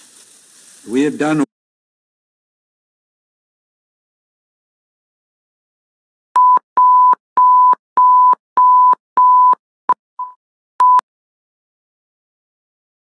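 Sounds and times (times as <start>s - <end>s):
beep clicks: 6.4s - 9.6s, 10.2s - 11.0s.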